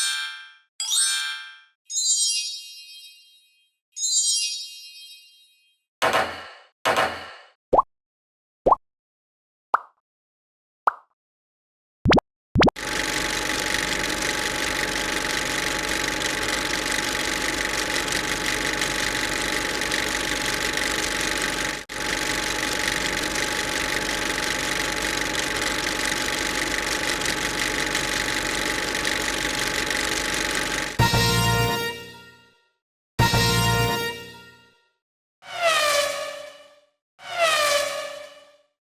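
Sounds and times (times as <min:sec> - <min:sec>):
machine running with faint hum: 0:12.8 - 0:31.4.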